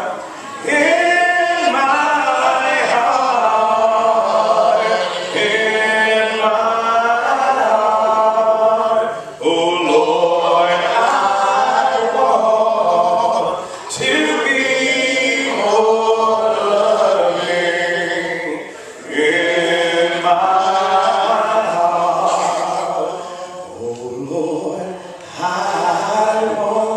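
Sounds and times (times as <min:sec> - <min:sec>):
congregation singing a hymn: 0:00.0 - 0:26.9.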